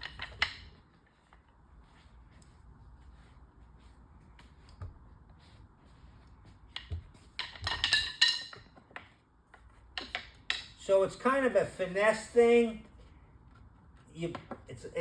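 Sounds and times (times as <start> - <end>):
rapid knocks and metallic clinks: 0.0 - 1.5, 6.6 - 10.9.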